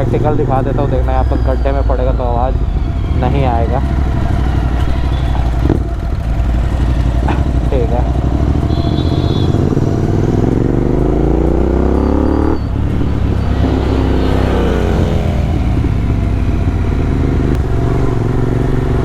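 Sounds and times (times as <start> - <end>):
motorcycle engine accelerating: 0.0 - 19.0.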